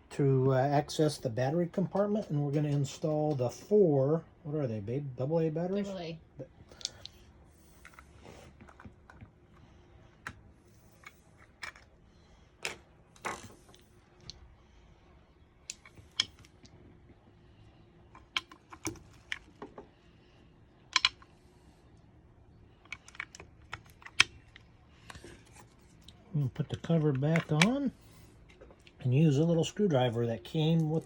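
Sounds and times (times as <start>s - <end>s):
batteries clicking into place: 20.9s - 21.3s.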